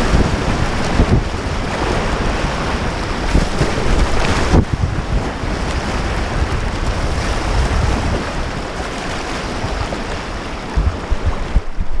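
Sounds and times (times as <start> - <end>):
river whitewater rushing: 0.0 - 12.0
wind buffeting microphone: 0.0 - 12.0.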